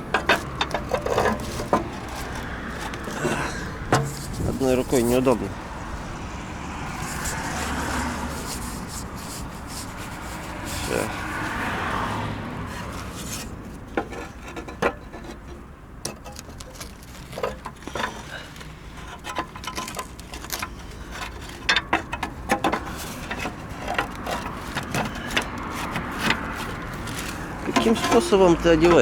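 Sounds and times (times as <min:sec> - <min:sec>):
light clicks and knocks: 0:00.0 - 0:05.8, 0:12.7 - 0:29.0
rustling: 0:00.0 - 0:29.0.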